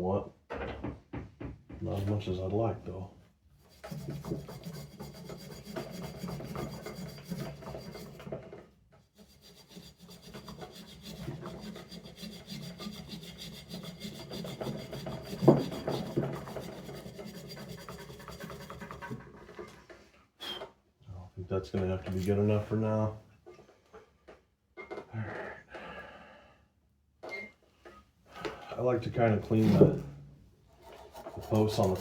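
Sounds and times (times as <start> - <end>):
scrubbing rusty metal by hand: 3.6 - 8.3, 9.2 - 19.4, 30.8 - 32.0
loud scrape: 9.2 - 19.2, 30.8 - 32.0.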